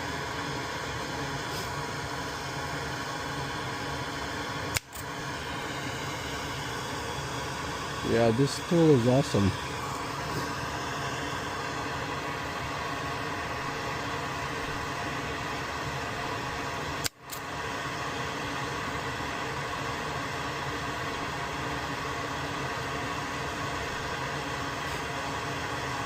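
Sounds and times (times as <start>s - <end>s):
desoldering tool fan whoosh: 0.0s - 26.0s.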